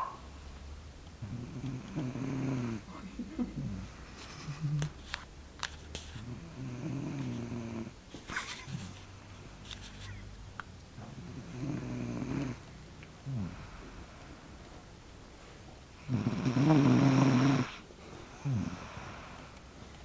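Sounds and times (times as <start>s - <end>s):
person snoring: 1.2s - 4.9s, 6.3s - 7.9s, 11.2s - 12.6s, 13.2s - 14.0s, 16.0s - 19.5s.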